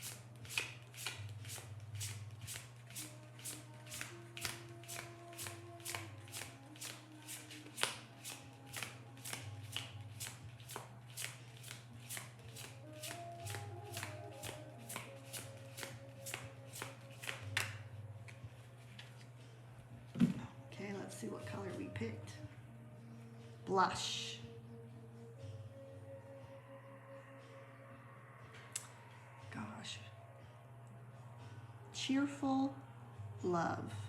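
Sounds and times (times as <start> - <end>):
cards being shuffled: 0.0 - 19.4
quiet background music: 0.0 - 34.0.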